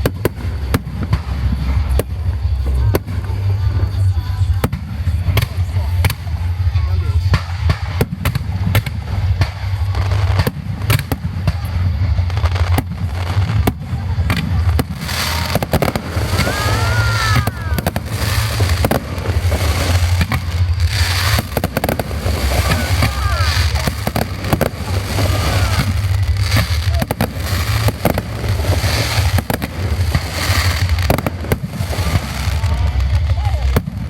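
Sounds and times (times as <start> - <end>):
deep booming rumble: 0.0 - 34.0
fireworks crackling: 0.0 - 34.0
firework shells bursting: 10.3 - 32.6.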